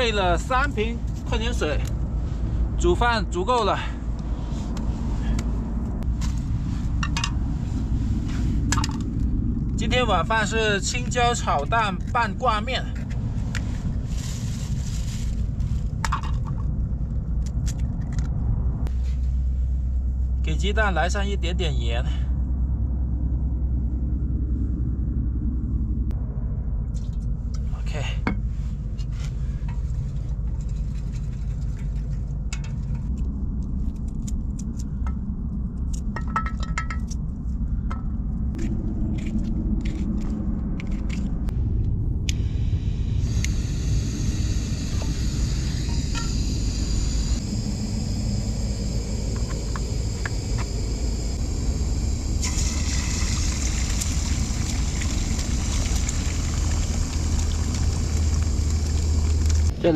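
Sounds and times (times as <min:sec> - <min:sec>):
wind buffeting microphone: 0:22.3 - 0:59.9.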